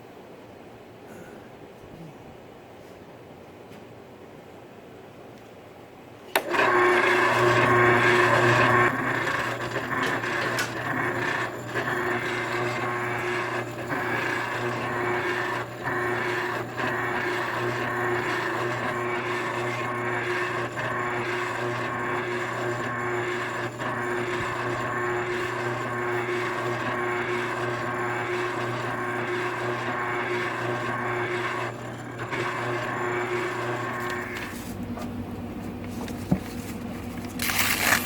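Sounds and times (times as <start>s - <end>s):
electric grinder grinding steel: 6.4s - 34.9s, 37.2s - 38.0s.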